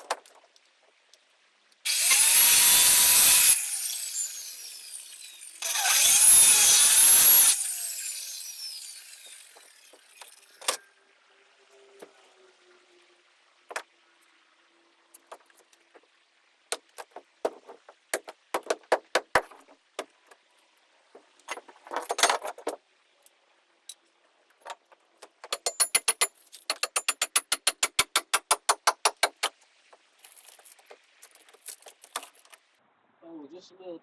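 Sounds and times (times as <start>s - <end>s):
hand tools knocking: 25.5s - 29.5s.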